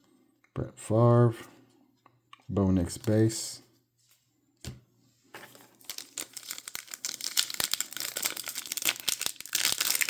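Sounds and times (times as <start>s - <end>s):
wrapper crinkling and crackling: 5.5s - 10.0s.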